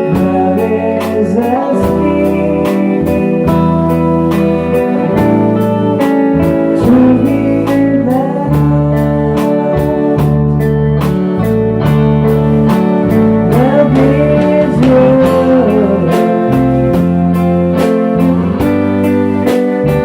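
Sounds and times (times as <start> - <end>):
bass guitar: 0.0 - 20.0
electric guitar bending notes: 0.0 - 20.0
steady drum beat: 0.0 - 20.0.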